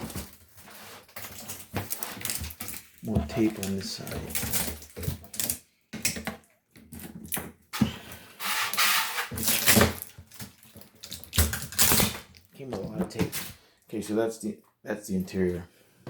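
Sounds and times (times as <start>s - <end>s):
packing tape peeled and ripped: 8.4s - 12.4s.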